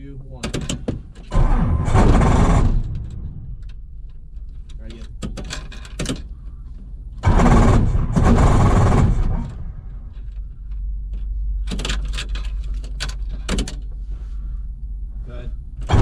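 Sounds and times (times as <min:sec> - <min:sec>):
starter cranking engine: 0:01.3 - 0:03.8, 0:07.2 - 0:09.6.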